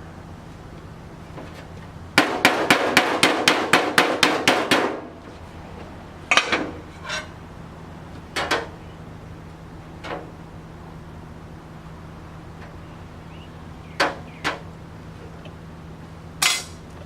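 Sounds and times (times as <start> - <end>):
hammer striking steel panel: 2.2 - 5.1, 16.4 - 16.8.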